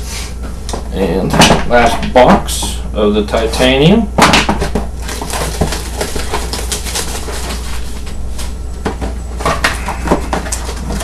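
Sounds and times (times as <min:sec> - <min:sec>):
plastic wrap crackling: 0:04.8 - 0:08.6.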